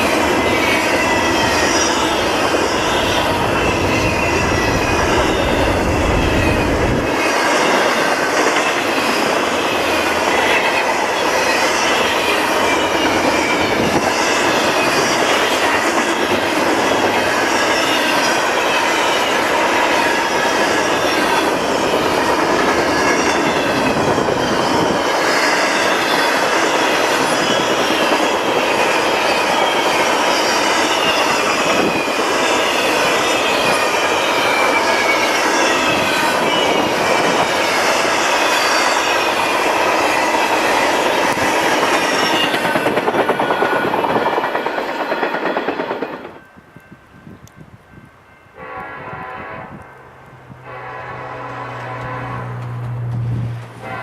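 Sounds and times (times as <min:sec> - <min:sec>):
steel wheels squealing: 0:00.0 - 0:46.4
freight train cars rolling: 0:00.0 - 0:54.0.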